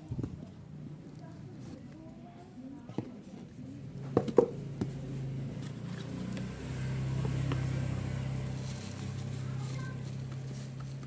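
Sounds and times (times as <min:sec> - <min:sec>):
low engine-like hum: 0:03.7 - 0:11.0.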